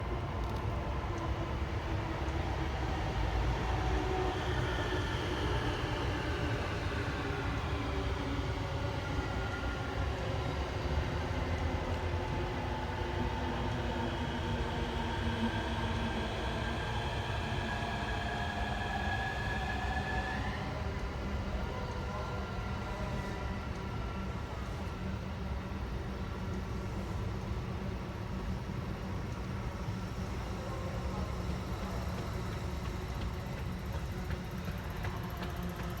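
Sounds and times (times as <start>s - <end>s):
train wheels rumbling on rails: 0.0s - 36.0s
faint clicks: 0.4s - 1.3s.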